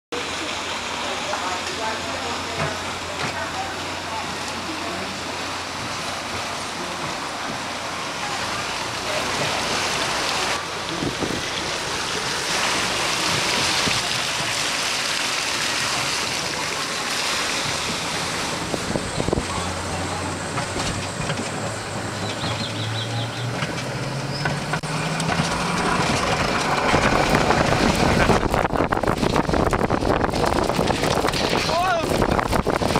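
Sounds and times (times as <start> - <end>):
sled rumbling on track: 0.1 - 32.9
low hum rising in pitch: 1.8 - 31.6
wind noise: 10.9 - 14.6, 17.3 - 22.7, 25.2 - 32.9.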